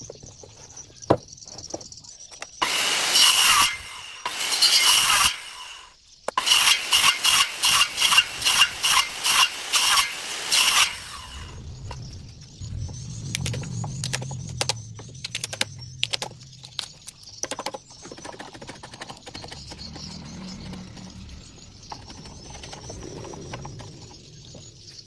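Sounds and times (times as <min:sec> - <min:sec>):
hand saw cutting wood: 0:02.6 - 0:11.6.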